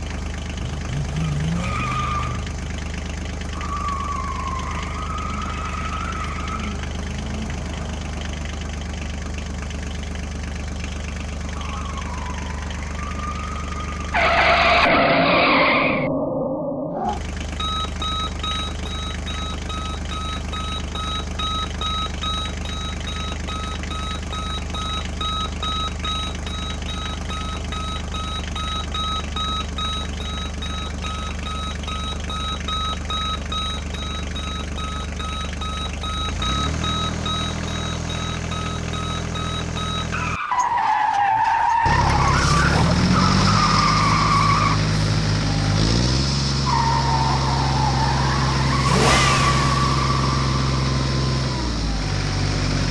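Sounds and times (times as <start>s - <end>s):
quick electronic beeps: 17.0s - 40.1s.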